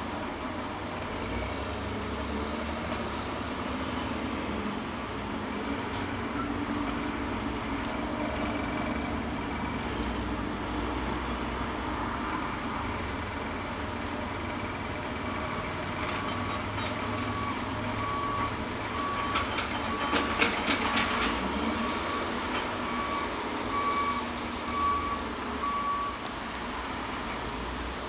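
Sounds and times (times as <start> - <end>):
metallic clanks and knocks: 19.2 - 21.6.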